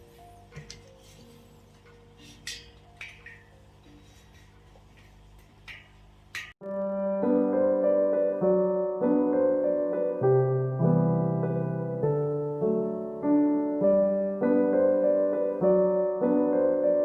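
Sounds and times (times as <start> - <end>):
piano playing slow chords: 0.0 - 2.3, 6.6 - 17.0.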